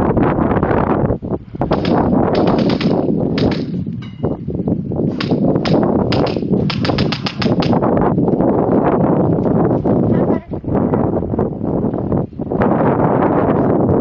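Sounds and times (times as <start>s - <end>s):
airsoft guns firing bursts: 1.7s - 3.8s, 5.2s - 7.8s.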